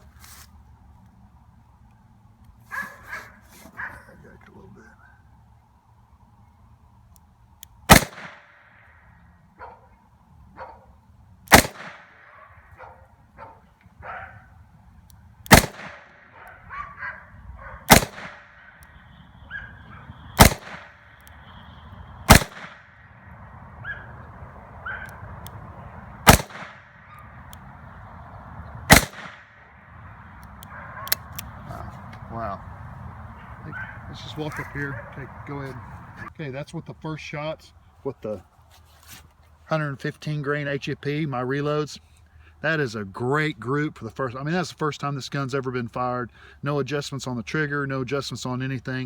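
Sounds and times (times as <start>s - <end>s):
revolver shots: 15.5s - 16.5s, 17.9s - 18.6s, 20.4s - 21.0s, 22.3s - 23.0s, 26.2s - 27.2s, 28.9s - 29.5s.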